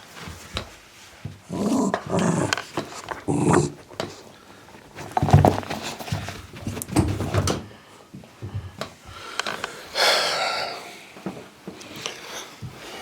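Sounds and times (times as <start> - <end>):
dog growling: 1.5 - 4.1.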